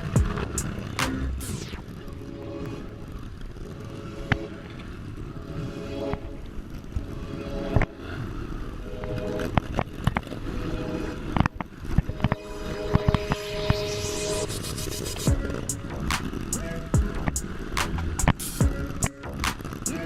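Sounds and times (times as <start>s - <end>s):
motorcycle engine rumbling: 0.0s - 1.7s.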